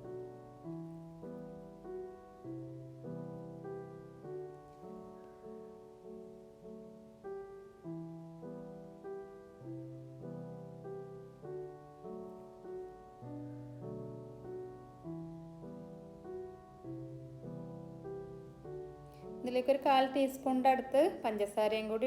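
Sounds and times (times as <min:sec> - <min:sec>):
soft piano music: 0:00.0 - 0:22.0.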